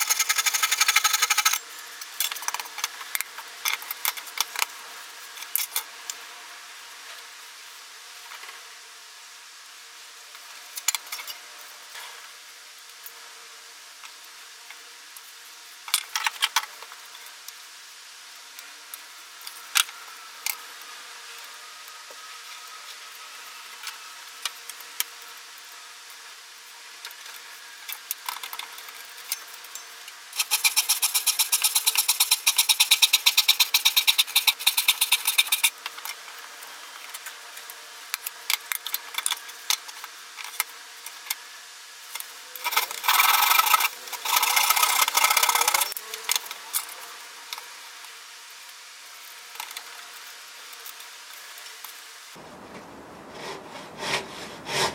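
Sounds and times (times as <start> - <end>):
saw cutting board: 0.0 - 2.9, 42.6 - 46.4, 53.2 - 54.9.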